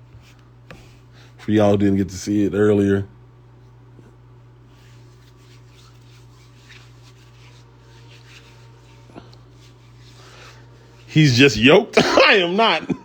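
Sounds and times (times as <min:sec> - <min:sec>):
hands rubbing and rustling: 0:04.7 - 0:11.5.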